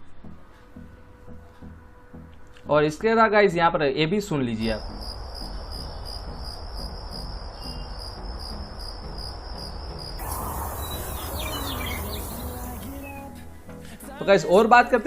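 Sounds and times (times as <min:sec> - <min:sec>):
crickets chirring: 0:04.8 - 0:13.3
short bird-like chirps: 0:10.2 - 0:13.3.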